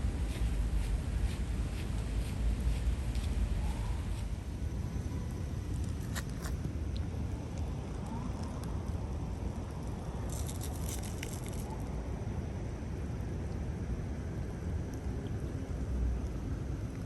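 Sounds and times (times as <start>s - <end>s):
low rain rumble: 6.6s - 17.0s.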